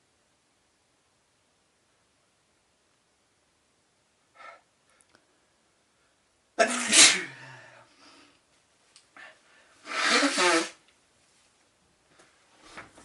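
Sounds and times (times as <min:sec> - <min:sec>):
person sneezing: 0:06.6 - 0:07.8, 0:09.8 - 0:10.8.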